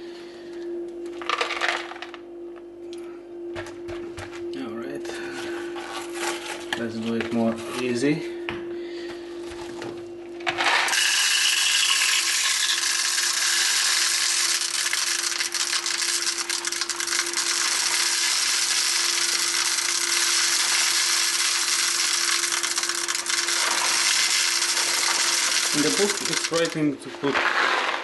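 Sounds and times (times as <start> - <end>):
salt pouring: 10.9 - 26.8.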